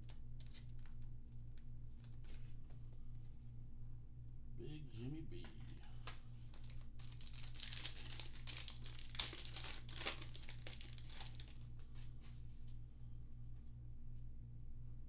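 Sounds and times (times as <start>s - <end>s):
plastic wrapper crinkling and tearing: 0.0s - 2.5s, 6.0s - 12.2s.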